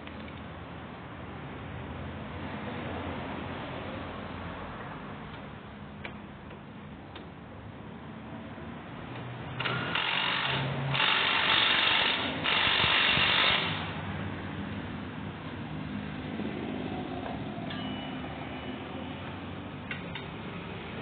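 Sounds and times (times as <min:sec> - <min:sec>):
power tool running: 0:09.6 - 0:14.0.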